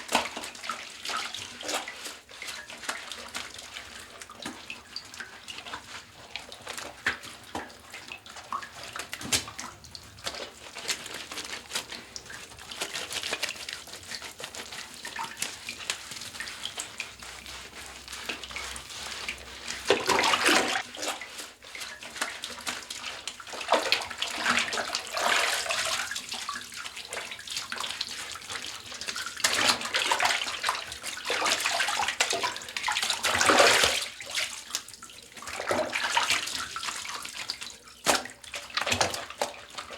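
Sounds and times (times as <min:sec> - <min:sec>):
water splashing in a bathtub: 0:00.0 - 0:39.9.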